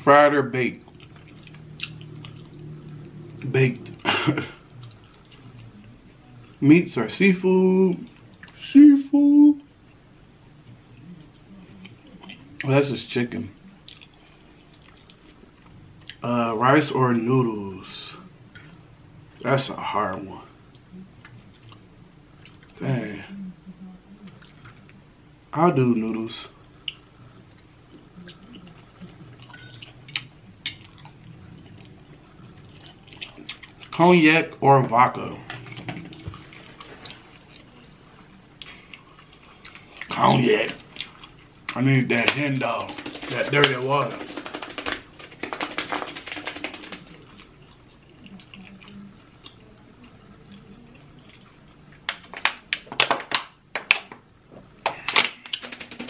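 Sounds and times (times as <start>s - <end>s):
wet chewing mouth sounds: 0.8s - 4.1s, 13.8s - 16.2s, 26.8s - 34.0s.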